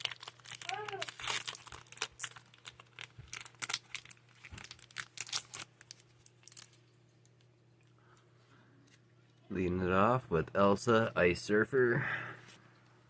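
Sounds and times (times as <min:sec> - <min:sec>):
foil wrapper tearing and crinkling: 0:00.0 - 0:06.8.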